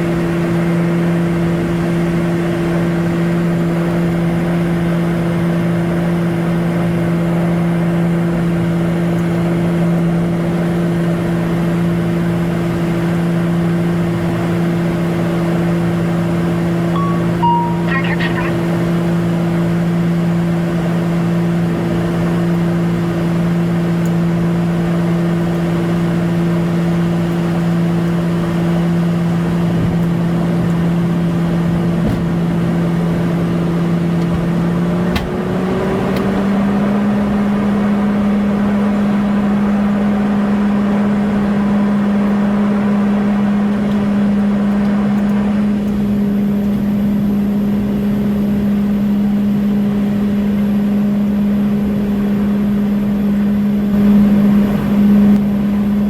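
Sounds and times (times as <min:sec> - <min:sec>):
airliner engine drone: 0:17.0 - 0:18.9.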